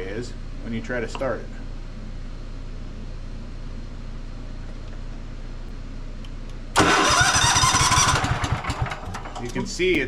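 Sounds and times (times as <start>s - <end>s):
steady low hum: 0.0s - 10.0s
starter cranking engine: 6.8s - 9.7s.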